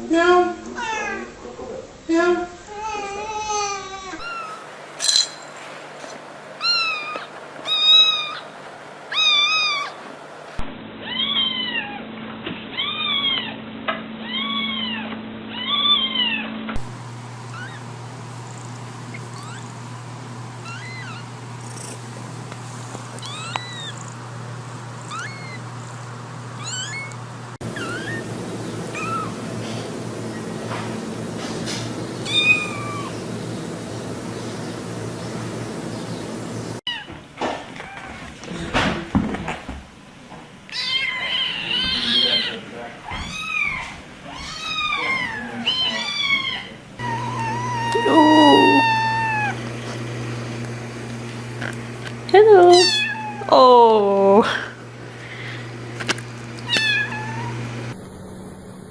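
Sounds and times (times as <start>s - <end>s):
cats meowing: 6.6s - 8.5s, 9.1s - 10.0s, 11.0s - 12.0s, 12.7s - 13.6s, 14.2s - 16.9s, 17.5s - 17.9s, 19.1s - 19.8s, 20.6s - 22.0s, 23.2s - 24.2s, 25.0s - 25.7s, 26.6s - 28.3s, 28.9s - 29.4s, 32.3s - 33.2s, 36.9s - 37.2s, 40.7s - 49.6s, 52.6s - 53.7s, 56.6s - 58.0s.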